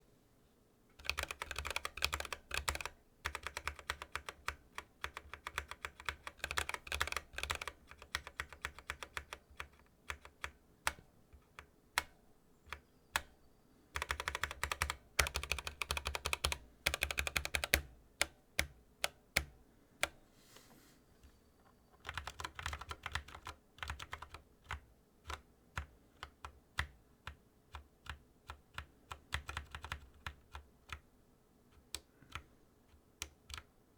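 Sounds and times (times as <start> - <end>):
mechanical keyboard typing: 1.0 - 12.1, 14.0 - 19.5, 22.0 - 31.0.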